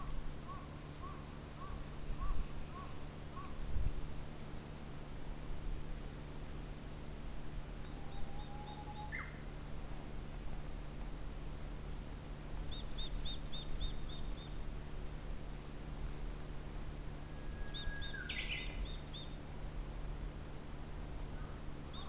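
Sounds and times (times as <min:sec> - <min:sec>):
low background rumble: 0:00.0 - 0:22.0
small bird chirping: 0:07.8 - 0:09.5, 0:12.6 - 0:14.6, 0:17.5 - 0:19.4.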